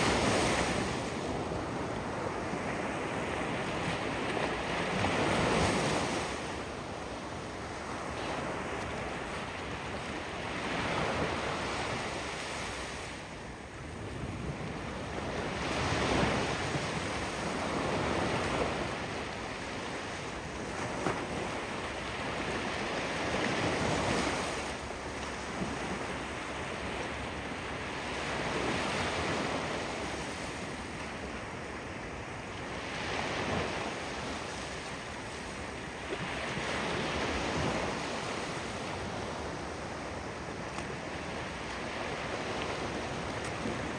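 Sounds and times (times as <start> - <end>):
waves breaking on shore: 14.2 - 43.9.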